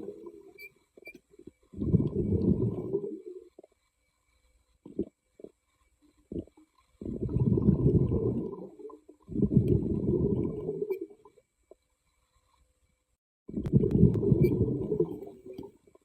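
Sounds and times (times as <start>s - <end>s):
exhaled air bubbling underwater: 0.0s - 0.7s, 1.6s - 3.7s, 4.8s - 5.6s, 6.2s - 11.4s, 13.5s - 16.0s.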